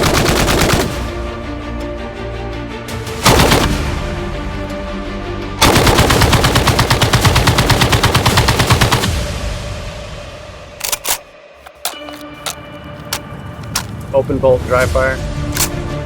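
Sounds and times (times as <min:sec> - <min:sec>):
suppressed automatic gunfire: 0:00.0 - 0:01.0, 0:03.3 - 0:03.8, 0:05.6 - 0:09.1
background music: 0:00.0 - 0:16.0.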